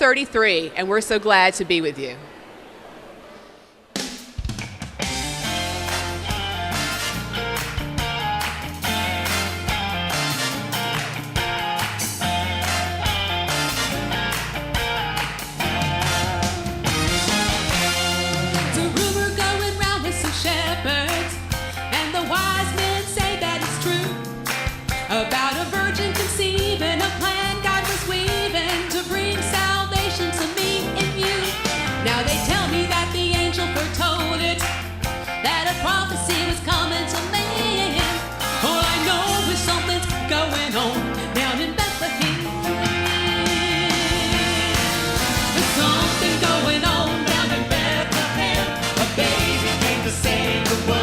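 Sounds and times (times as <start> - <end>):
band music: 4.0 - 51.0
steady bass line: 5.0 - 25.0, 41.8 - 51.0
person singing: 35.4 - 51.0.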